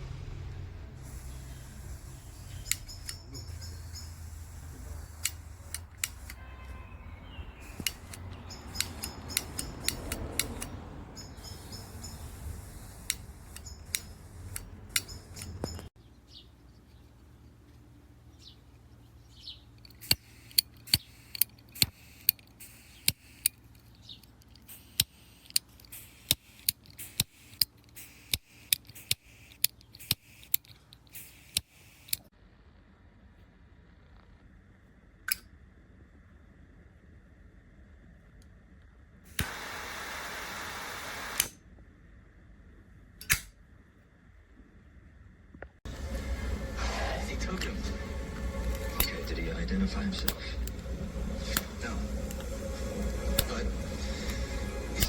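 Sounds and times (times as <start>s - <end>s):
lighter igniter clicking: 3.9s - 6.4s, 7.6s - 10.8s, 39.3s - 41.6s, 50.2s - 55.0s.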